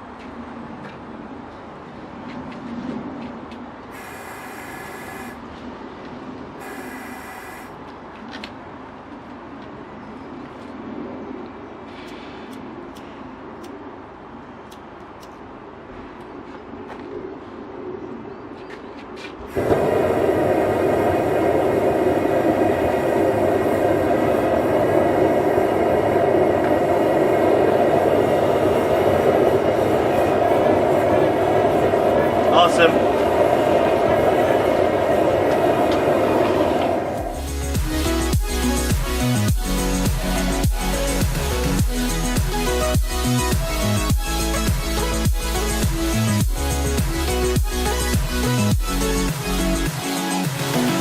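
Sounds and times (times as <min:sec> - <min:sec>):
high whistling hiss: 0:03.9 - 0:05.4, 0:06.6 - 0:07.8
propane forge rushing: 0:19.5 - 0:42.1.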